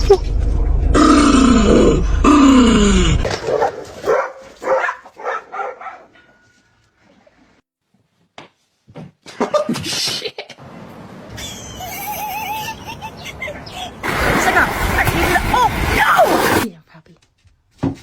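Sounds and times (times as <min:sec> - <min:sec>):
dog barking: 0:03.4 - 0:06.2.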